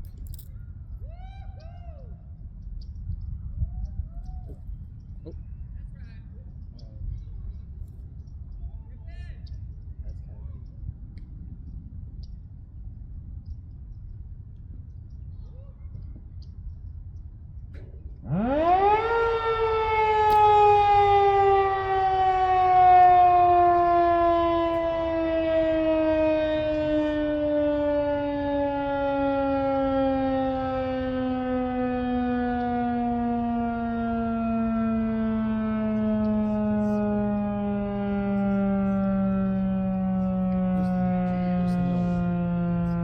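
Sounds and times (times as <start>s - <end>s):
warning siren winding up and down: 17.8s - 43.0s.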